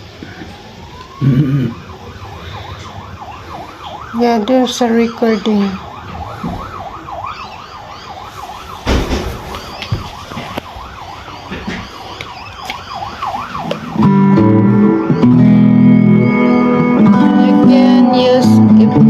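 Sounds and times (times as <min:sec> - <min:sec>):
warbling siren-like tone: 0:00.5 - 0:19.0
loud guitar music through amplifier: 0:13.7 - 0:19.0.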